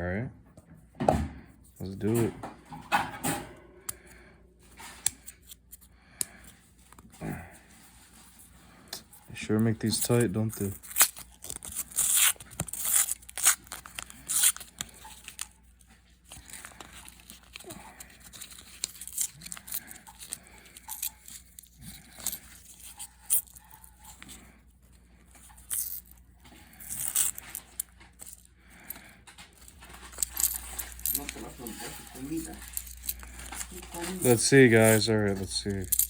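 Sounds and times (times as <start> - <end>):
paper wrapper tearing and crinkling: 9.8 - 15.6, 16.2 - 23.6, 29.5 - 36.0.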